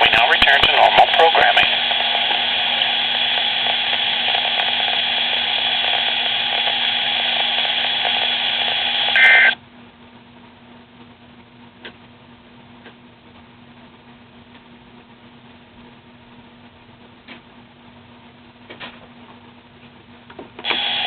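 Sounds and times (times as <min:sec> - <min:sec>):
radio static hiss: 0:00.0 - 0:09.6, 0:20.6 - 0:21.0
data tones: 0:03.4 - 0:09.6.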